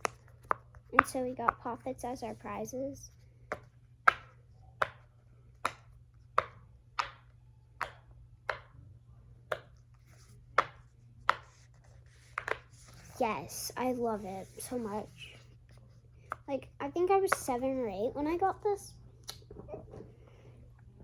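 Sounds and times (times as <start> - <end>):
pop-it toy bubbles popping: 5.7 - 8.7.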